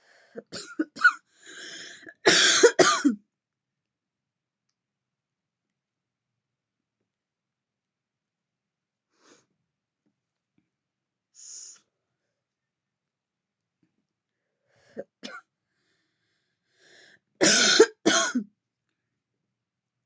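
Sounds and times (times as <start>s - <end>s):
woman coughing: 0.4s - 1.2s, 2.1s - 3.2s, 17.4s - 18.4s.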